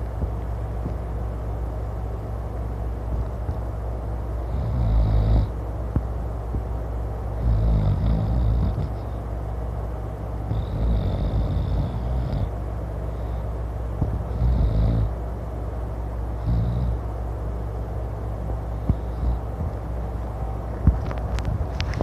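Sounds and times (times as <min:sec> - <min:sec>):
low background hum: 0:00.0 - 0:22.0
man snoring loudly: 0:04.5 - 0:05.6, 0:07.4 - 0:09.1, 0:10.5 - 0:12.5, 0:14.2 - 0:15.1, 0:16.4 - 0:17.0.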